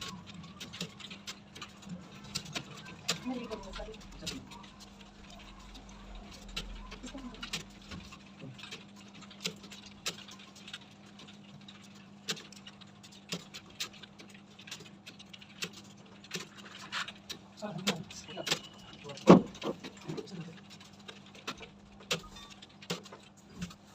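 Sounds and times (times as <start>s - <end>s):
steady low hum: 0.0s - 22.7s
computer keyboards clicking: 0.0s - 23.9s.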